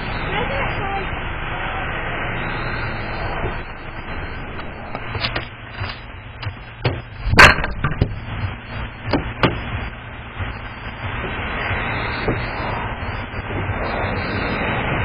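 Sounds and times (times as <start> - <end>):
steady low hum: 0.0 - 15.0
sharp knocks and clicks: 4.9 - 11.4.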